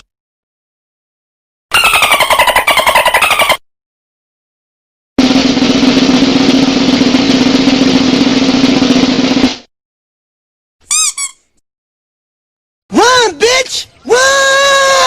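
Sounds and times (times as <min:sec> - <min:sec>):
snare drum roll: 0:05.2 - 0:09.7.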